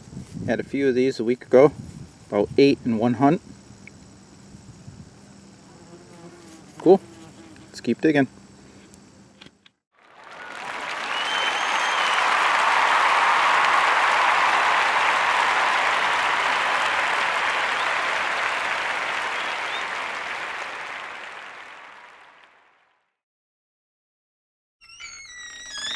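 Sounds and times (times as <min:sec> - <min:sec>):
crowd applause: 0:10.0 - 0:22.9.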